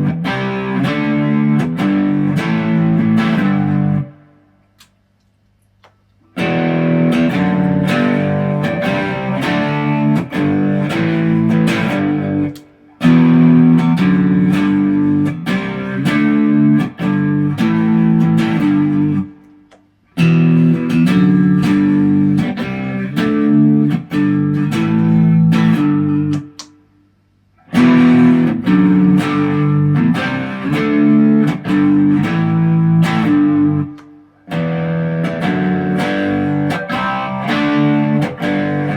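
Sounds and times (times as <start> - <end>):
electric guitar notes and chords: 0.0 - 4.9, 6.3 - 26.9, 27.6 - 38.9.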